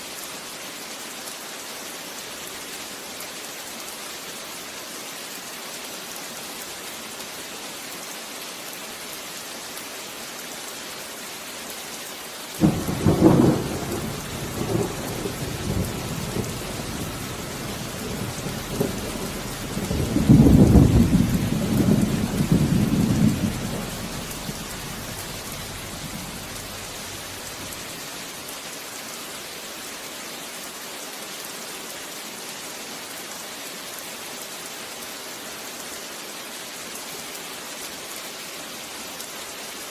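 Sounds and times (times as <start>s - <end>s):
steady rain: 0.0s - 39.9s
thunder rumbling: 12.6s - 27.9s.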